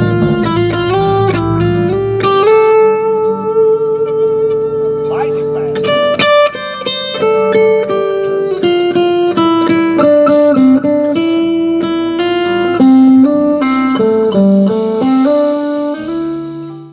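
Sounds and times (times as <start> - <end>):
guitar picking lead melody: 0.0 - 16.9
band playing instrumental: 5.0 - 6.1, 10.3 - 16.9.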